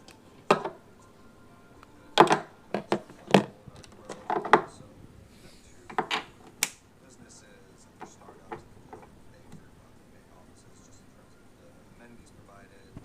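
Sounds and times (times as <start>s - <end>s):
sharp knocks and clicks: 0.5s - 0.8s.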